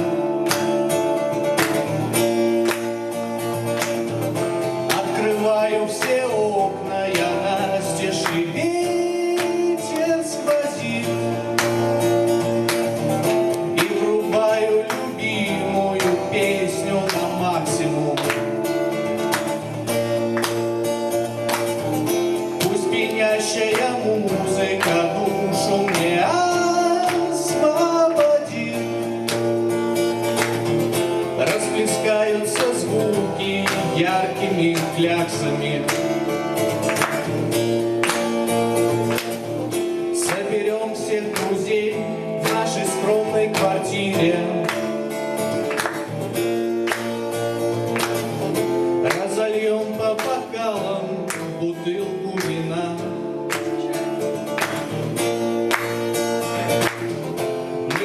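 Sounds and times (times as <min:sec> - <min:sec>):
strummed acoustic guitar: 0:00.0 - 0:58.0
man singing: 0:04.6 - 0:11.9, 0:13.6 - 0:18.7, 0:22.3 - 0:29.4, 0:31.2 - 0:36.5, 0:38.8 - 0:45.2, 0:48.9 - 0:54.3, 0:57.8 - 0:58.0.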